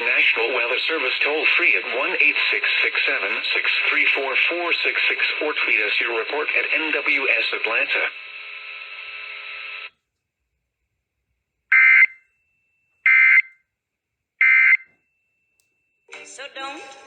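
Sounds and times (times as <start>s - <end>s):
radio hiss: 0.0s - 9.9s.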